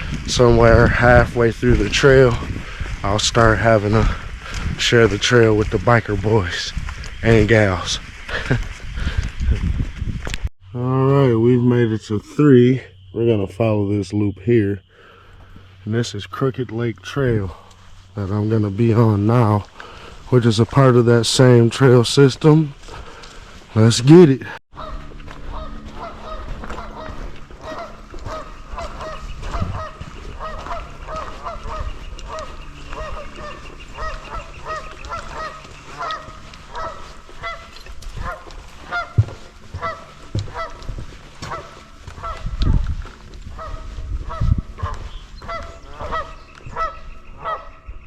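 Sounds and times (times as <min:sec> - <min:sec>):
geese honking: 0:00.0 - 0:09.4, 0:12.6 - 0:48.0
low thumps: 0:39.0 - 0:41.6.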